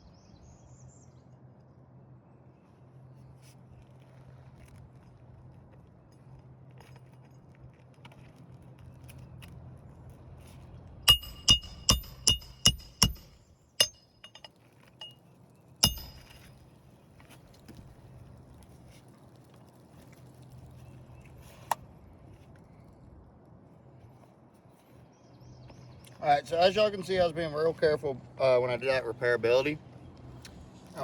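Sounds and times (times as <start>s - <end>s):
hammer striking metal: 11.1s - 15.2s, 15.8s - 16.6s.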